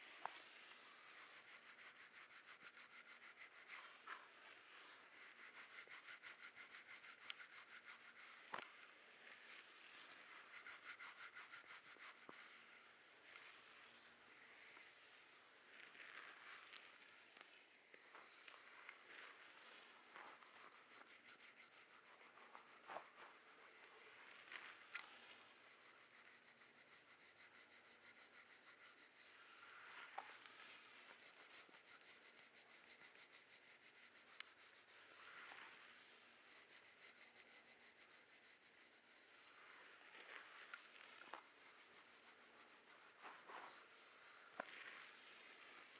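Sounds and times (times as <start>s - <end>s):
massage rubbing and scratching: 19.1s - 29.2s, 40.1s - 44.1s.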